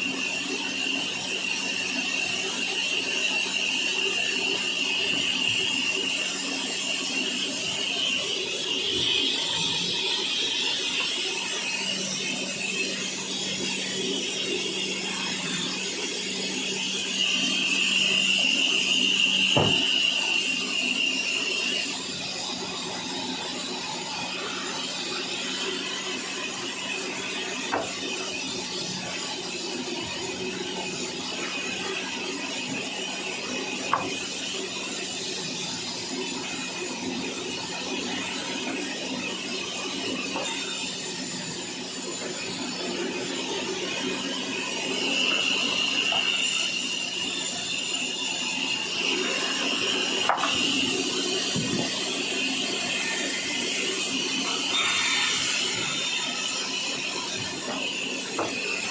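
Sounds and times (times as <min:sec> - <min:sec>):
sawmill machinery humming and clattering: 0:00.0 - 0:58.9
sharp knocks: 0:19.6 - 0:19.9.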